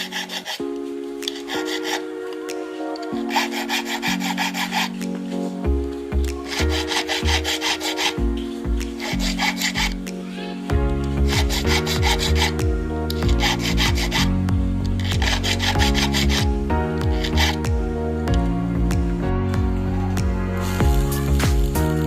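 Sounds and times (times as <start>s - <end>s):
hand tool rasping metal: 0.0s - 2.1s, 3.1s - 5.0s, 6.4s - 8.2s, 9.0s - 10.0s, 11.3s - 12.6s, 13.2s - 14.3s, 15.0s - 16.5s
background music with bass: 0.0s - 22.0s.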